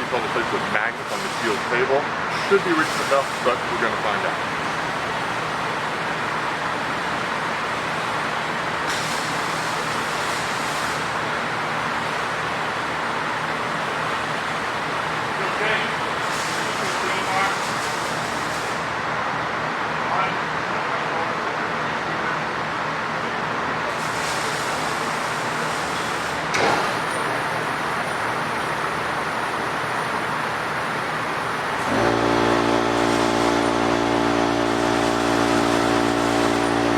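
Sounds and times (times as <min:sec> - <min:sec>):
bandsaw running: 0:30.9 - 0:36.9.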